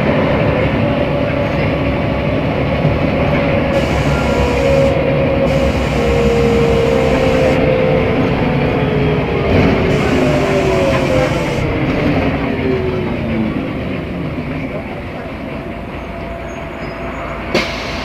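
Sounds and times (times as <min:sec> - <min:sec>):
bus engine whine: 0:00.0 - 0:18.0
higher whine: 0:03.7 - 0:12.4.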